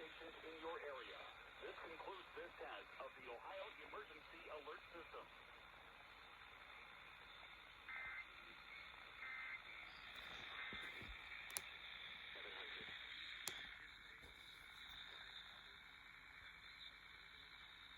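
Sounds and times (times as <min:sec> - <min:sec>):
radio hiss: 0:00.0 - 0:05.9, 0:06.8 - 0:15.8
steady high whine: 0:00.0 - 0:17.9
static crackles: 0:07.3 - 0:15.3.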